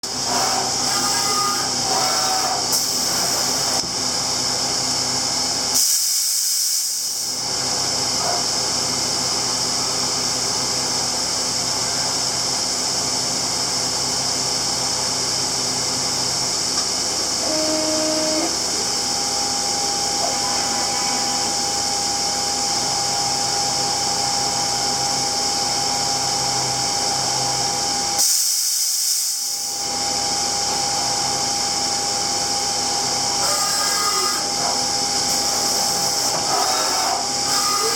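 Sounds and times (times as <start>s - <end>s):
machine hum: 16.8s - 24.4s, 30.8s - 37.9s.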